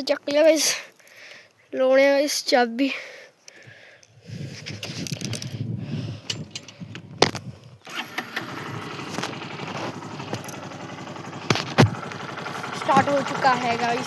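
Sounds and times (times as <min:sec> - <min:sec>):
motorcycle engine running: 0:07.9 - 0:14.0.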